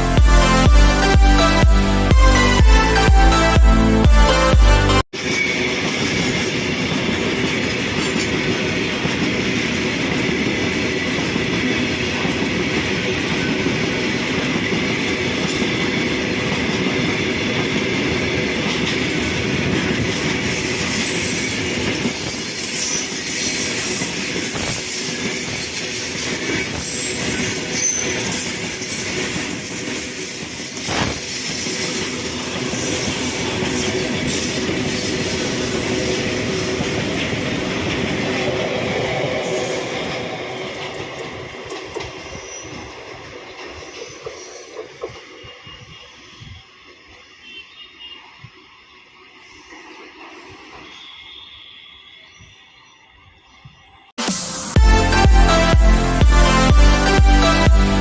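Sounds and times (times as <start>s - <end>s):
train wheels rumbling on rails: 5.2s - 47.4s
high wheel squeal: 13.2s - 53.9s.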